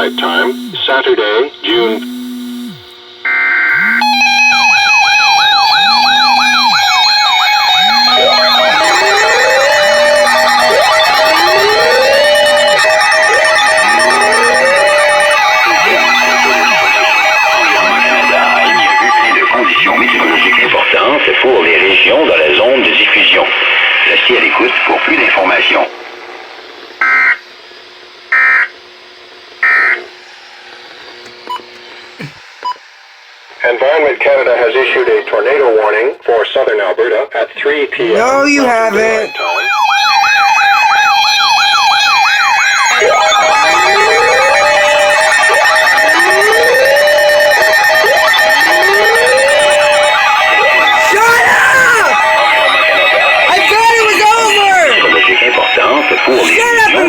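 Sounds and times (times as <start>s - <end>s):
dense electronic tone burst: 0.0s - 0.9s, 1.7s - 2.9s, 3.7s - 20.9s
low electronic tone: 0.0s - 0.9s, 1.7s - 3.0s, 3.7s - 20.8s, 43.0s - 50.2s
electronic siren wail: 0.0s - 1.0s, 1.7s - 22.9s, 38.2s - 57.0s
steady high electronic tones: 0.0s - 1.0s, 1.6s - 3.1s, 3.7s - 20.9s, 38.1s - 40.2s, 42.6s - 57.0s.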